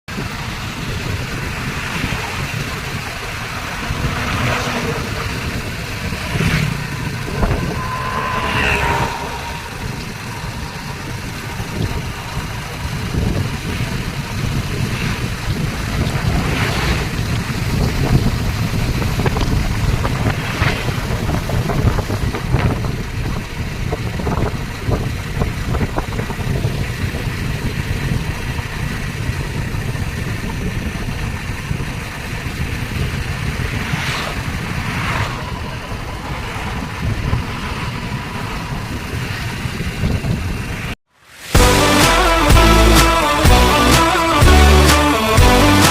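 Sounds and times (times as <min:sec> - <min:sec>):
vehicles splashing through water: 0:00.1 - 0:08.1, 0:10.3 - 0:25.8
vehicle engines rumbling: 0:00.1 - 0:45.9.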